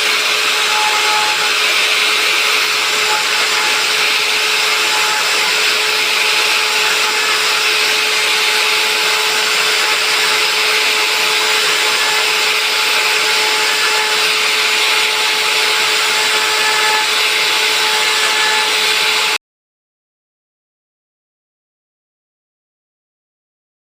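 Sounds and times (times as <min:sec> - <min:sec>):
router motor whine: 0:00.0 - 0:19.4.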